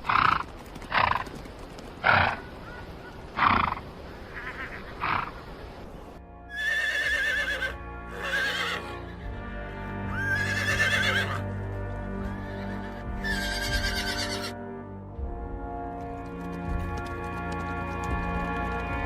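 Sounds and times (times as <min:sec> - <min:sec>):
horses whinnying: 0:03.4 - 0:05.4, 0:06.5 - 0:09.2, 0:10.1 - 0:11.4, 0:12.2 - 0:14.6
background music sustained tones: 0:05.8 - 0:19.0.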